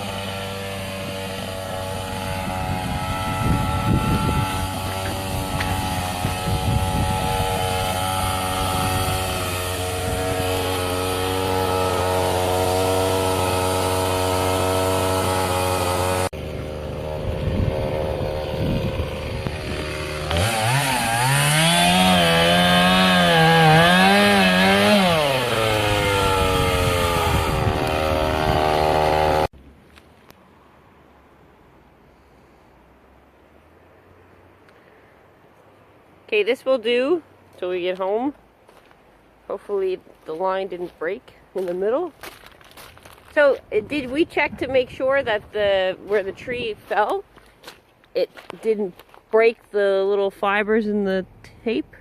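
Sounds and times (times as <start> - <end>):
chainsaw revving cutting wood: 0.0 - 29.5.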